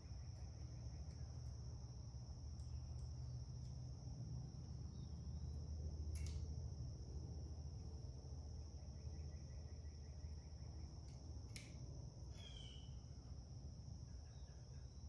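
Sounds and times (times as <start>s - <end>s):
bird-like chirp: 12.3s - 13.0s.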